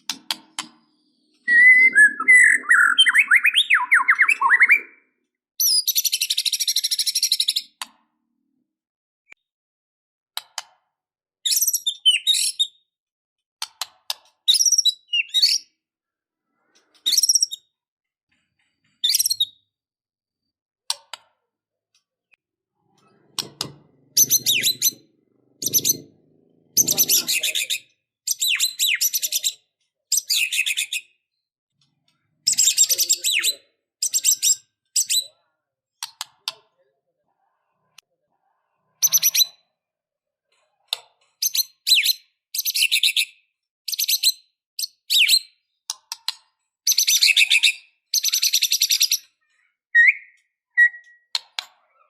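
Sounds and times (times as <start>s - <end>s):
bird singing high-pitched phrases: 0.9s - 7.8s, 11.5s - 12.8s, 14.5s - 15.8s, 24.2s - 25.0s, 26.7s - 31.5s, 32.2s - 35.4s, 38.8s - 39.7s, 41.4s - 45.9s, 46.9s - 52.0s.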